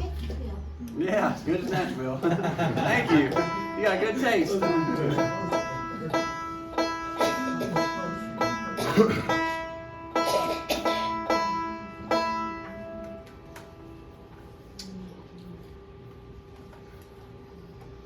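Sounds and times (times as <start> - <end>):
banjo plucking single notes: 3.1 - 13.4.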